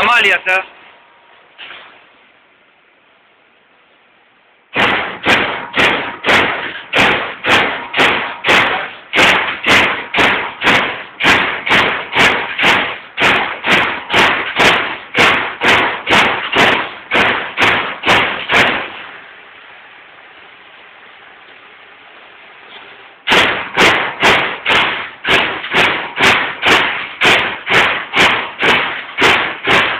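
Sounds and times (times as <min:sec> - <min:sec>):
punch press punching sheet metal: 0:04.7 - 0:19.2, 0:23.2 - 0:29.9.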